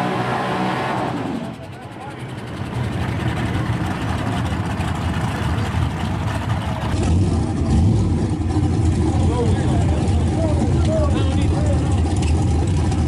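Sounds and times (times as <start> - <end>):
loud rough car engine: 0.0 - 13.0.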